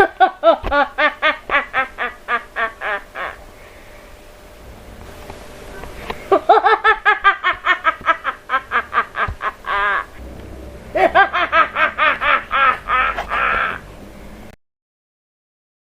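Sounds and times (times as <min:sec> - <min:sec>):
woman cackling laugh: 0:00.0 - 0:03.4, 0:06.3 - 0:10.2, 0:10.9 - 0:13.8.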